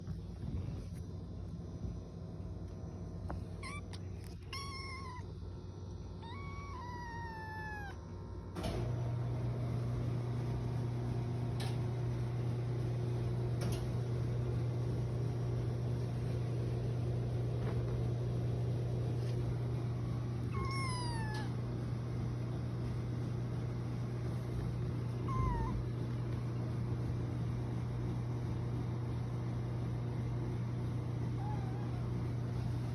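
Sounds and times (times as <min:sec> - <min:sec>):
steady low hum: 0:00.0 - 0:32.9
kitten meowing: 0:03.6 - 0:05.4, 0:06.2 - 0:08.0, 0:20.4 - 0:21.6, 0:25.2 - 0:26.0, 0:31.3 - 0:32.2.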